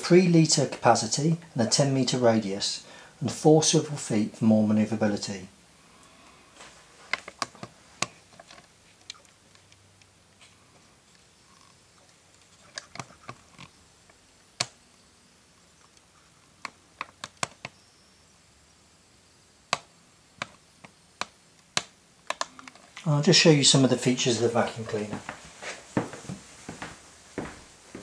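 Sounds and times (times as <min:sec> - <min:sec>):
hard plastic clicking and tapping: 0:19.7 - 0:22.8.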